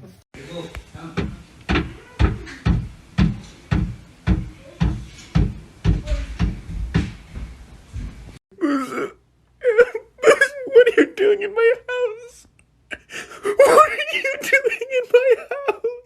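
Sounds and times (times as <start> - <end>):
dull rhythmic knocks: 0.7 - 8.4.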